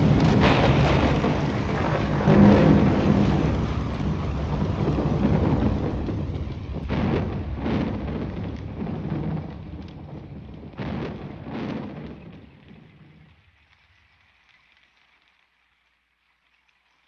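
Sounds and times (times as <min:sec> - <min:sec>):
thunder rumbling and cracking: 0:00.0 - 0:13.6.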